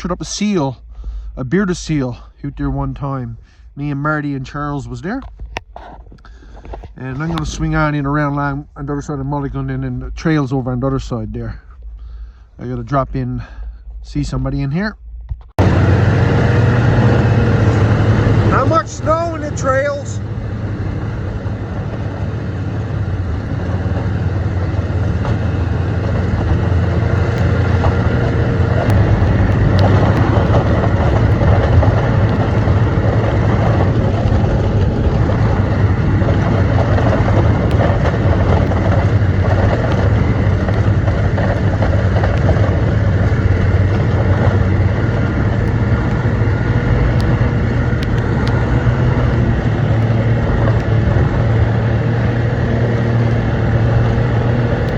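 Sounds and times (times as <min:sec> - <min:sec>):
rush of track and wind: 0:04.1 - 0:11.4, 0:15.2 - 0:54.9
snowmobile engine humming: 0:15.6 - 0:54.9.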